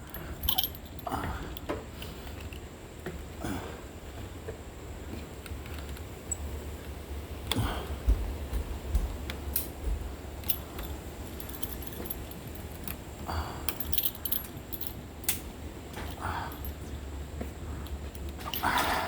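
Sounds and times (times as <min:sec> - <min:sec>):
light metallic jingling: 0:00.0 - 0:01.6, 0:10.3 - 0:15.1, 0:15.9 - 0:16.9
scattered clicks and taps: 0:08.0 - 0:10.6.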